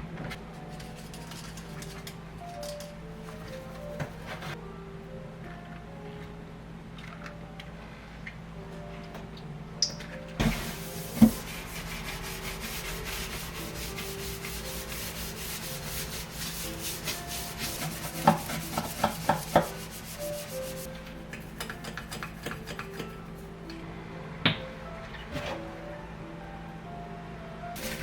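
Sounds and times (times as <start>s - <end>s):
faint background music: 0.0s - 28.0s
brisk rubbing against a surface: 10.5s - 23.5s.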